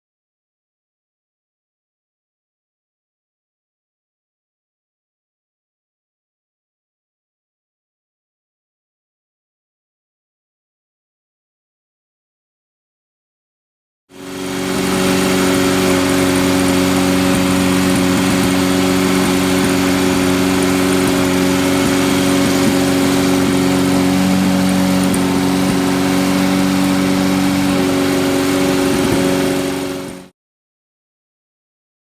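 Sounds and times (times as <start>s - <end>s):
engine running steadily: 14.2s - 30.3s.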